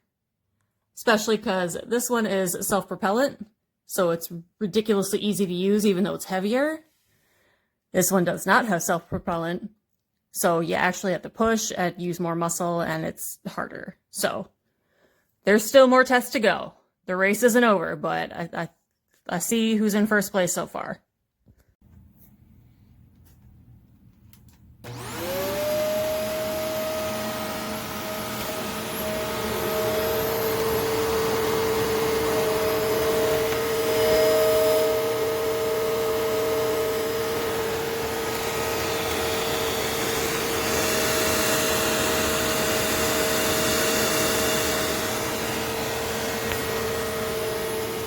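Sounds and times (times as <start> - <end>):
vacuum cleaner motor whine: 24.8 - 48.0.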